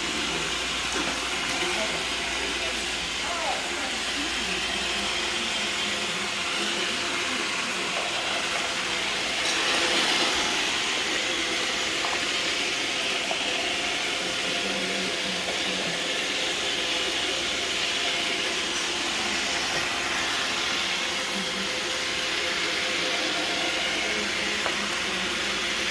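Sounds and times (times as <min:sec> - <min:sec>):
robot vacuum whirring: 0:00.0 - 0:25.9.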